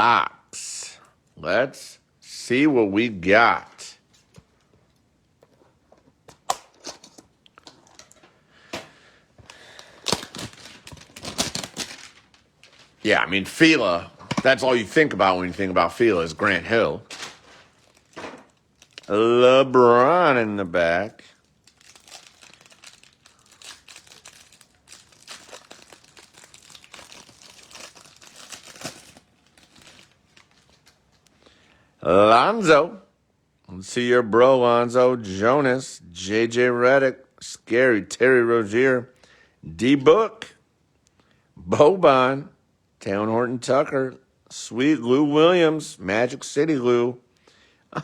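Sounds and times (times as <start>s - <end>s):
plastic wrapper crinkling: 9.4s - 20.2s, 21.1s - 31.4s
cardboard packaging clicking and snapping: 9.5s - 12.9s, 17.1s - 19.1s, 21.6s - 31.0s
packaging ripping: 9.5s - 13.0s, 16.0s - 19.2s, 21.4s - 31.2s.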